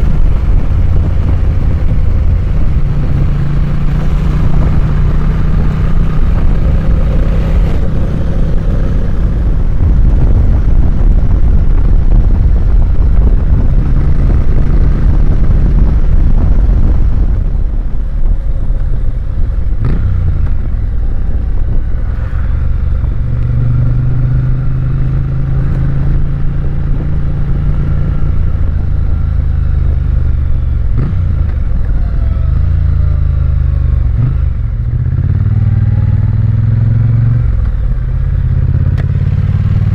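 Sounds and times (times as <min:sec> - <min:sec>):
motorcycle engine running: 0:00.0 - 0:39.9
wind rumble on microphone: 0:00.0 - 0:39.9.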